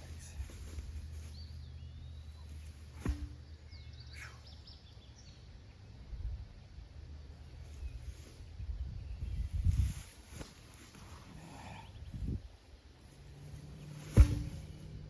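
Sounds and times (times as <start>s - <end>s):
faint bird chirps: 1.2s - 5.8s
low outdoor rumble: 10.6s - 15.0s.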